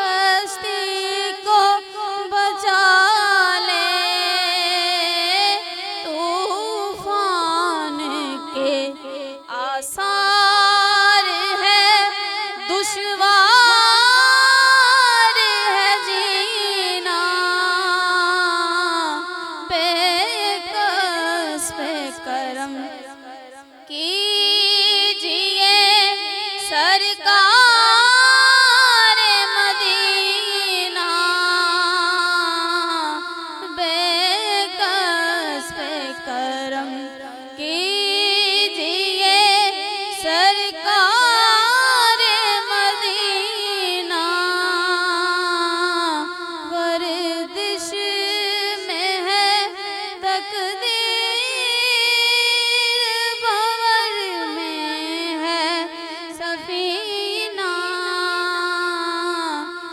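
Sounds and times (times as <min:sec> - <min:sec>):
woman singing: 0:00.0 - 0:59.9.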